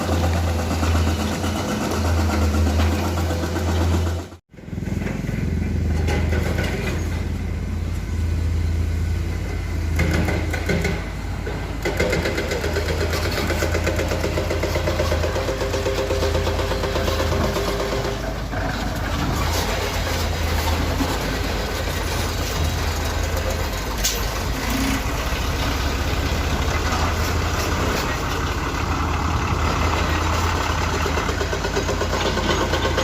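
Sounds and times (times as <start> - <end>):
excavator diesel engine running: 0.0 - 33.0.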